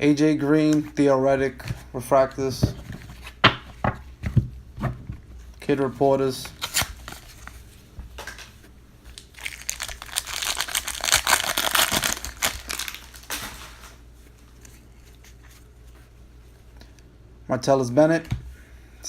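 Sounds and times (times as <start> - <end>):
foil wrapper tearing and crinkling: 9.1 - 13.9.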